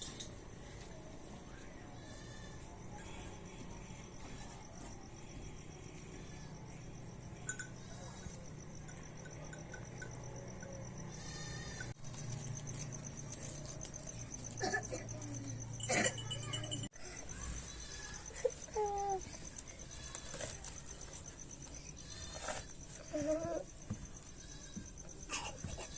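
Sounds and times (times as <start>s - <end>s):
livestock bleating: 2.0s - 2.7s, 11.1s - 12.0s.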